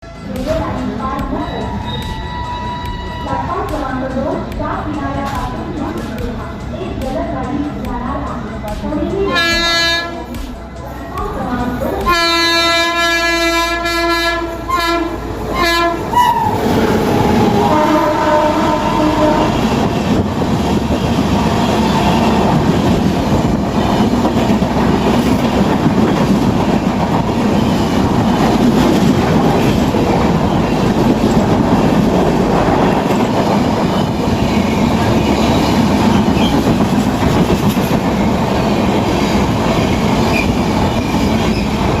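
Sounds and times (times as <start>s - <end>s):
train coaches rushing past: 0.0s - 42.0s
wheels clattering on rails: 0.2s - 9.6s, 15.4s - 42.0s
locomotive horn blasts: 9.3s - 10.4s, 12.0s - 16.6s, 17.3s - 19.8s.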